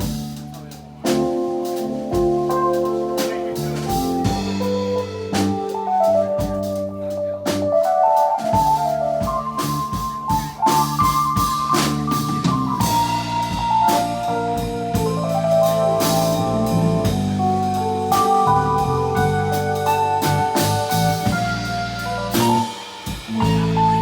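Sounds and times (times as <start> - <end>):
drum kit keeping time: 0.0 - 24.0
keyboard melody: 0.0 - 24.0
live band playing instrumental: 0.0 - 24.0
sustained low chords: 12.0 - 22.7, 23.3 - 24.0.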